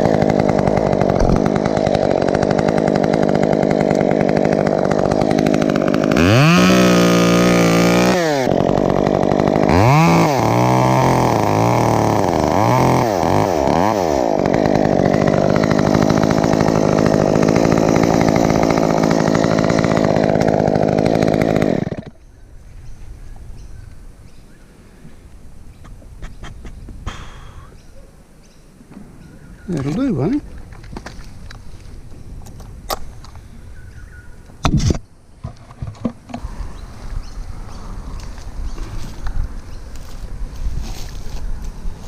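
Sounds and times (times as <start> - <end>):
chainsaw engine revving: 0.0 - 22.2.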